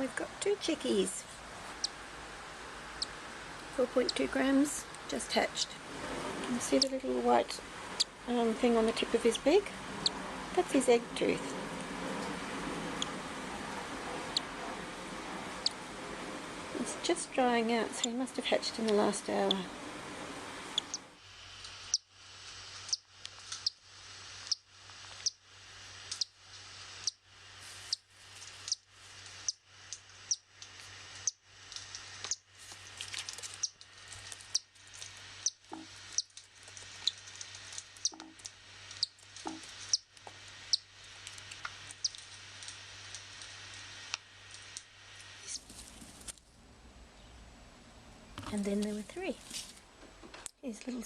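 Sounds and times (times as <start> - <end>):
bird chick peeping: 1.7 - 2.0, 2.9 - 3.2, 3.8 - 5.7, 6.5 - 21.1, 23.6 - 23.8, 25.2 - 25.4, 28.6 - 28.8, 35.4 - 36.4, 37.0 - 37.3, 38.0 - 40.1.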